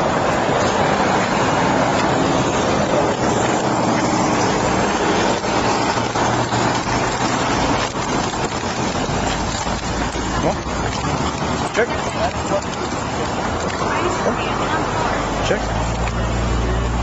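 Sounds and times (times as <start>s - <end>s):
road traffic rumble: 0.0s - 17.0s.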